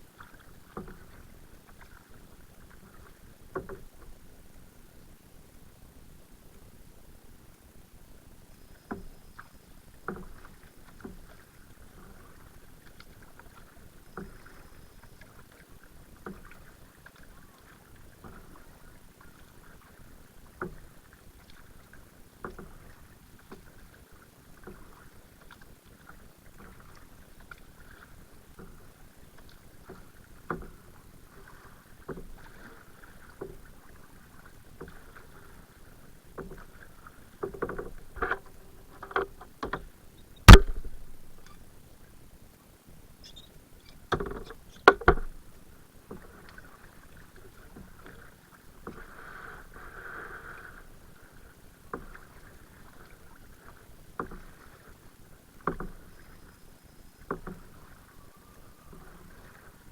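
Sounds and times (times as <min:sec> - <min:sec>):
paddle dipping and splashing water: 0:00.0 - 0:05.7, 0:07.4 - 0:59.9
paddle knocks: 0:00.3 - 0:02.0, 0:02.9 - 0:04.0, 0:10.0 - 0:11.4, 0:36.3 - 0:41.7, 0:43.3 - 0:46.7, 0:55.5 - 0:56.4, 0:57.2 - 0:57.8.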